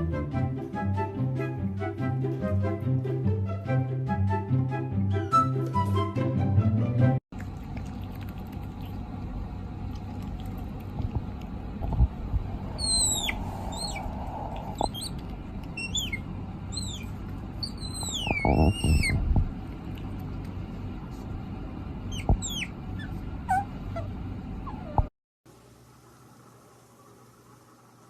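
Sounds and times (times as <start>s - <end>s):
low background rumble: 7.4s - 25.9s
animal squeaky calls: 12.7s - 19.2s, 22.1s - 25.0s.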